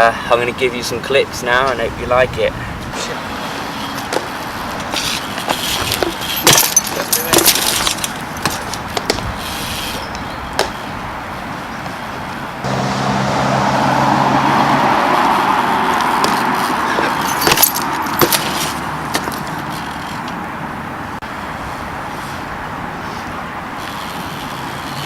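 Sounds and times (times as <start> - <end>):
bike tyres rolling on concrete: 2.8 - 12.7, 14.2 - 25.0
metallic clacks and rattles: 4.0 - 9.2, 17.0 - 20.4.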